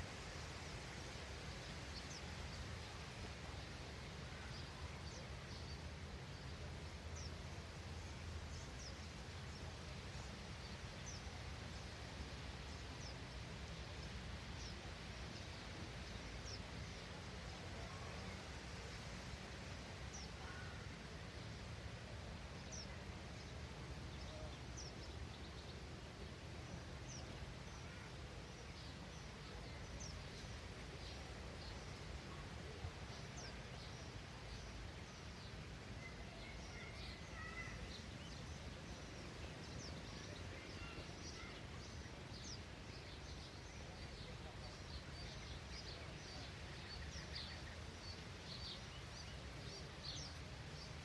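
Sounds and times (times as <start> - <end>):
small birds chirping: 22.6 - 51.0.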